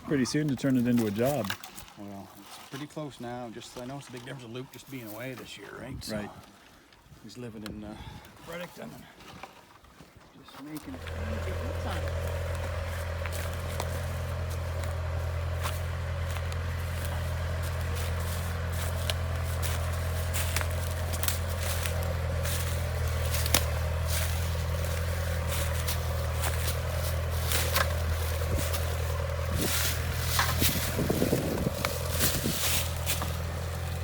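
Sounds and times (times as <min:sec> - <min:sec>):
crunching footsteps: 0:09.0 - 0:34.0
low machine hum: 0:10.9 - 0:34.0.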